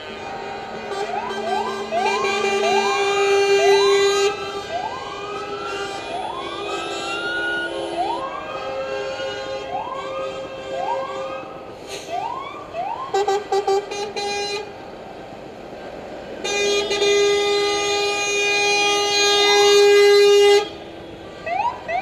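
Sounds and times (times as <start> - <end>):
truck air horn chord: 0.0 - 4.8
siren whooping: 1.1 - 8.9, 9.7 - 13.2.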